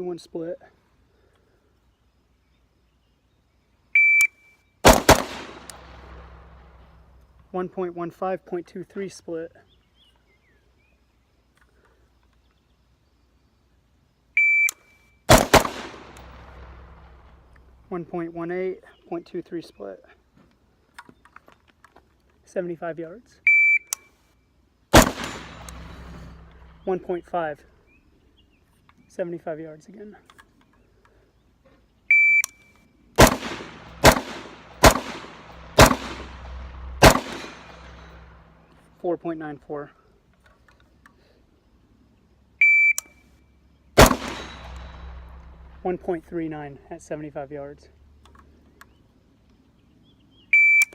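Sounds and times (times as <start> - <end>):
shot timer beep: 4.0 - 4.3
rifle shots with echo: 4.8 - 7.3, 15.3 - 17.8, 24.9 - 27.2, 33.2 - 38.8, 44.0 - 46.4.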